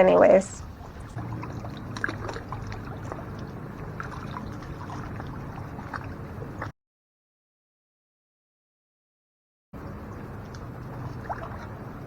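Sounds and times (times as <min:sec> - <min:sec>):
low steady hum: 0:00.0 - 0:06.7, 0:09.8 - 0:12.0
water splashing and dripping: 0:00.6 - 0:06.7, 0:10.1 - 0:12.0.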